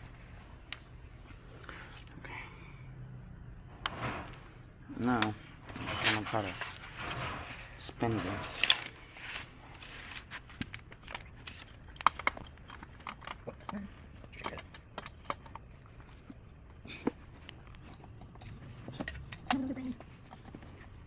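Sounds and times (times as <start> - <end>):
metallic clicks and knocks of tools: 10.6 - 15.8.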